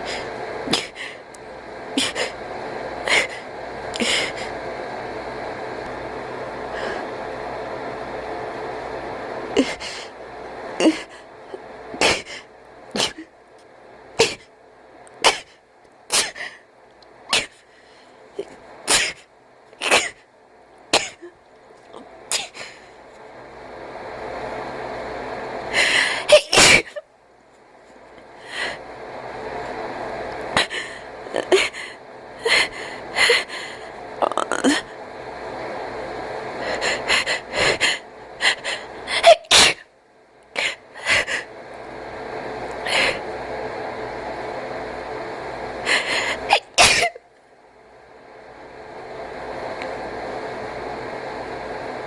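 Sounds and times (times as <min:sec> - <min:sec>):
cat wheezy breathing: 0:00.0 - 0:01.3, 0:03.0 - 0:04.6, 0:36.5 - 0:39.4, 0:45.8 - 0:46.5
cat sneezing: 0:14.2 - 0:14.4, 0:15.2 - 0:16.4, 0:18.9 - 0:19.2, 0:19.8 - 0:20.2, 0:26.3 - 0:27.0, 0:39.2 - 0:39.8, 0:46.5 - 0:47.2.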